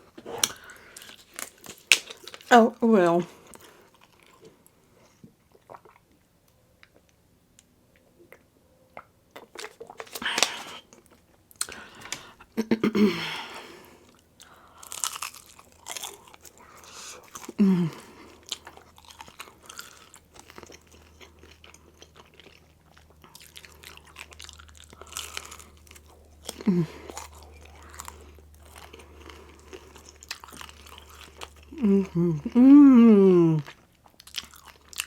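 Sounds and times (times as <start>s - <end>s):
chewing and crunching crispy food: 0.0s - 12.5s, 13.7s - 35.0s
person humming: 17.6s - 18.1s, 26.6s - 27.1s, 31.7s - 33.7s.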